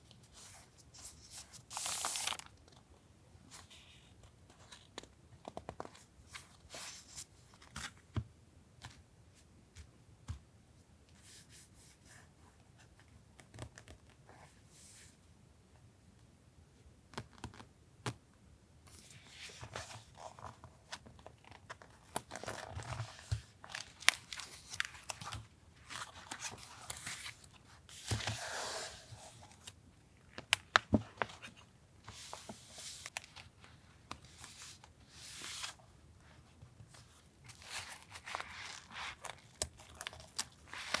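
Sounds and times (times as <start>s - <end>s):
paper crinkling and rustling: 0.3s - 2.8s, 18.9s - 35.8s, 36.9s - 41.0s.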